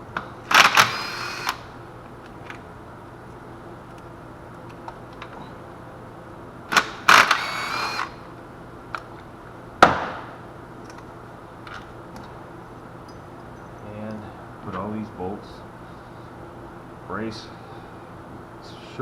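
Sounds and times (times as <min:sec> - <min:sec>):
tools and bolts clanking: 0:13.0 - 0:14.8.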